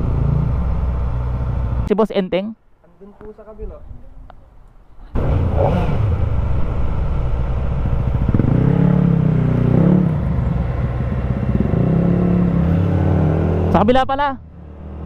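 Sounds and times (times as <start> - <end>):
motorcycle engine revving: 5.1 - 15.0.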